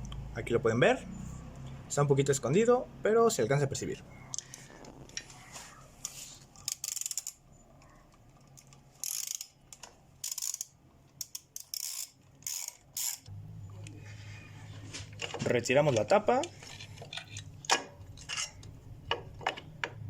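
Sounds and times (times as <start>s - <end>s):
ratchet wrench clicking: 6.6s - 7.4s, 8.6s - 13.3s.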